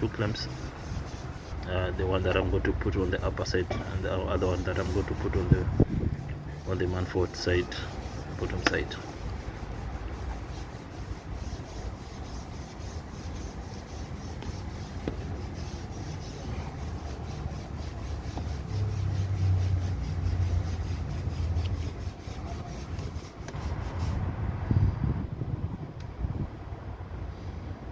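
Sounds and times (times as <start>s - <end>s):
rubbing and scraping handling noise: 0.0s - 24.3s.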